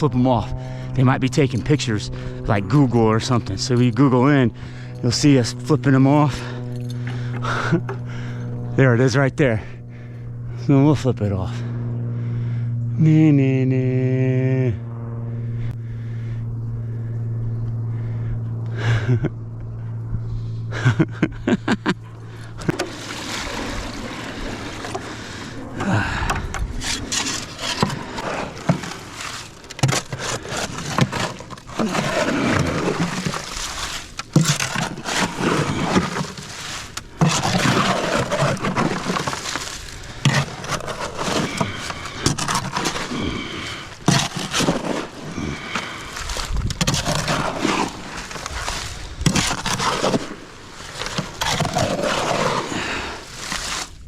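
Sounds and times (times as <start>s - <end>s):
hand tool scraping concrete: 22.3s - 54.0s.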